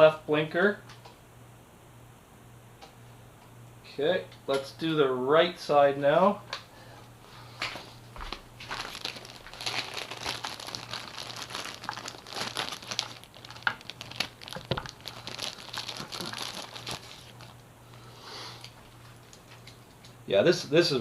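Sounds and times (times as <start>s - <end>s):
plastic crinkling and rustling: 8.2s - 17.7s, 18.6s - 20.1s.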